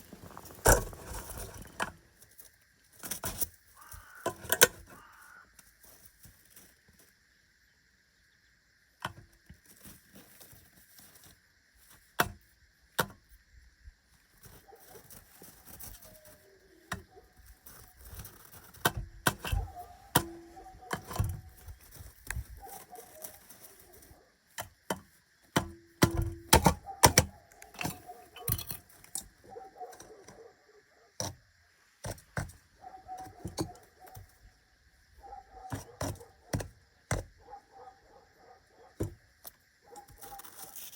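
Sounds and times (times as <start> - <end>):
raven soft calls: 3.7 - 5.6, 14.5 - 18.1, 19.4 - 24.4, 26.8 - 32.0, 32.6 - 36.6
sharp clicks and knocks: 24.6 - 29.4.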